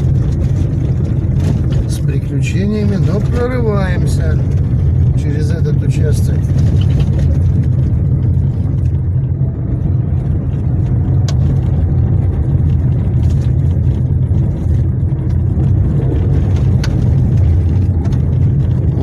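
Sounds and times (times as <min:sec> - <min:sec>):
car engine and tyres rumbling: 0:00.0 - 0:19.0.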